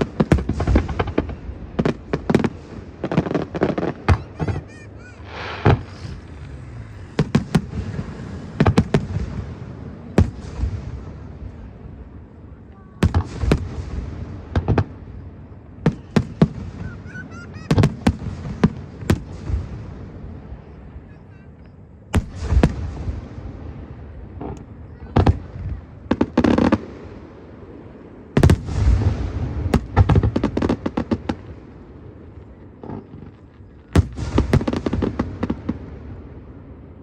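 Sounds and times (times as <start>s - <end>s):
fireworks whistling: 0.0s - 11.3s, 13.0s - 19.8s
fireworks bangs and crackling: 0.0s - 37.0s.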